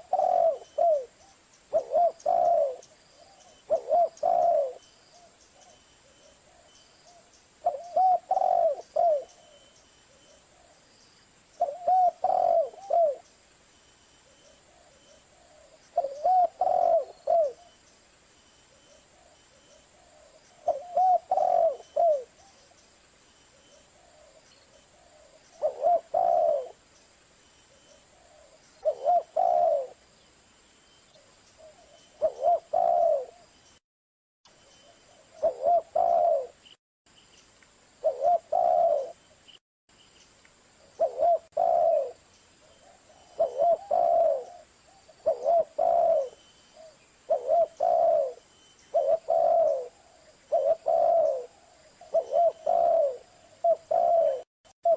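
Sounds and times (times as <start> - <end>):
dove cooing: 0.0 - 10.8, 11.6 - 13.3, 14.2 - 17.8, 19.2 - 22.7, 23.5 - 26.8, 27.8 - 30.0, 31.6 - 33.5, 34.8 - 36.6, 38.0 - 39.2, 40.9 - 54.9.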